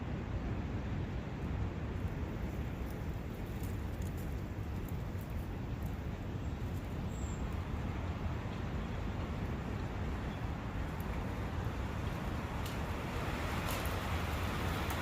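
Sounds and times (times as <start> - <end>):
wind: 0.0 - 15.0.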